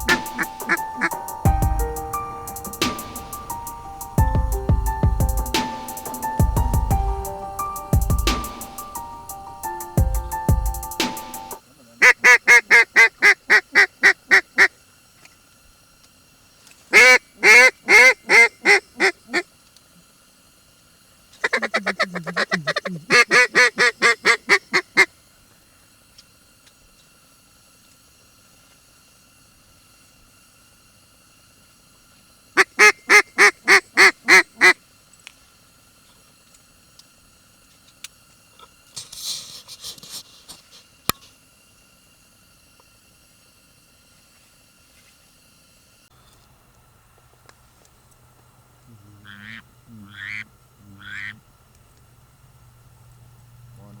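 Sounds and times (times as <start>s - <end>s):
duck quacking: 0.0s - 1.2s, 12.0s - 14.7s, 16.9s - 19.4s, 21.4s - 25.1s, 32.6s - 34.8s, 49.2s - 51.4s.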